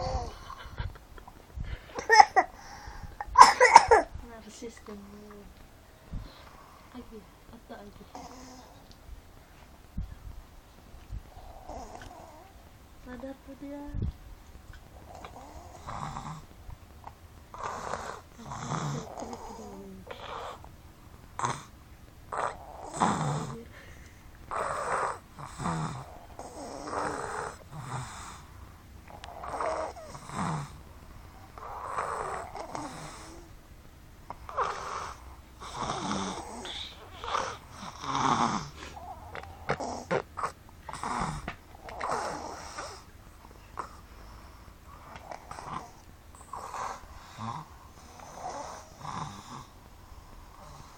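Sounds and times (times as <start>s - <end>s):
people snoring: 0.0s - 0.9s, 8.0s - 8.9s, 11.3s - 12.6s, 14.9s - 16.5s, 17.5s - 20.7s, 21.4s - 21.7s, 22.3s - 33.6s, 34.3s - 43.1s, 43.8s - 50.9s.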